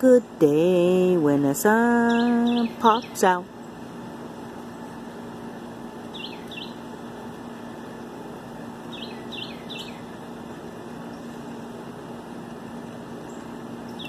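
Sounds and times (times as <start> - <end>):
steady background hum: 0.0 - 14.0
songbird singing high notes: 1.9 - 3.4, 6.1 - 6.8, 8.9 - 10.1.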